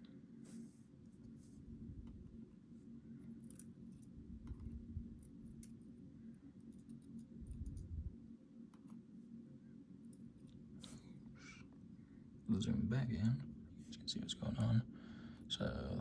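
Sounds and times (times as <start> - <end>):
steady low hum: 0.0 - 16.0
small metal parts clicking: 3.3 - 5.9, 6.7 - 7.9.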